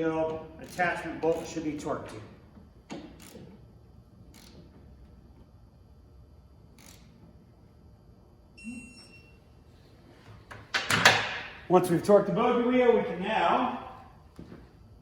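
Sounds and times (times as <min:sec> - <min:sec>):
low room hum: 0:00.0 - 0:15.0
faint electronic beep: 0:08.6 - 0:09.4.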